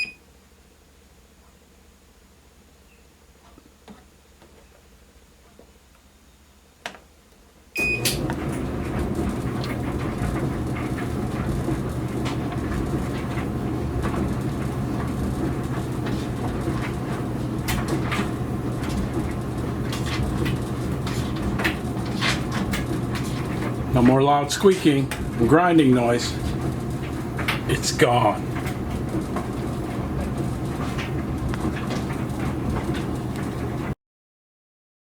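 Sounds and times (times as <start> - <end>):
dryer beep: 0.0 - 0.2, 7.8 - 18.8
dryer motor and drum running: 7.8 - 34.0.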